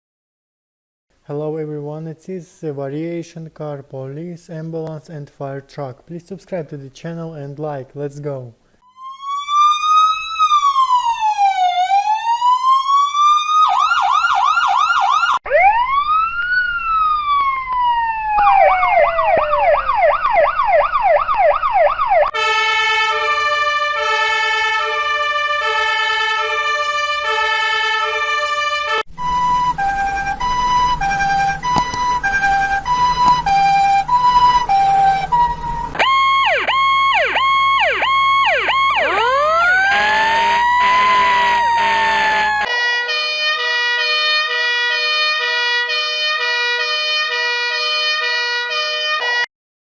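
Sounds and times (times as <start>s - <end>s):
siren yelping: 8.9s - 22.4s, 29.3s - 42.7s
siren wailing: 8.9s - 23.0s, 28.9s - 35.3s, 35.9s - 42.7s
two-tone hi-lo siren: 8.9s - 42.8s.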